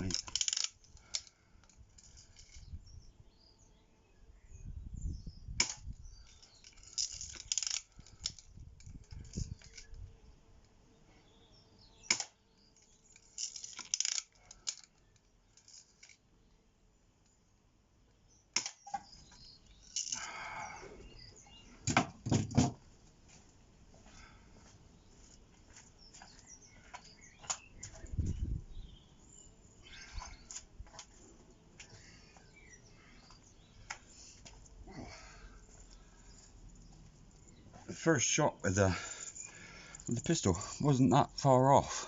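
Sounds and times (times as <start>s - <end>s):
rattling handling noises: 0.0s - 2.6s, 6.3s - 9.9s.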